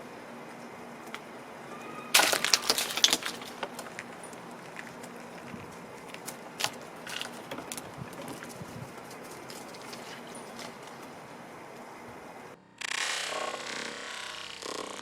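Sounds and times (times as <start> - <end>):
squirrel crunching seeds and nuts: 2.2 - 11.8.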